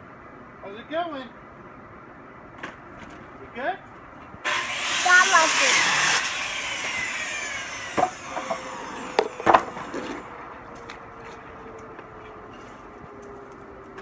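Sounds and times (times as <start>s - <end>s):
power saw winding down: 4.5s - 10.3s.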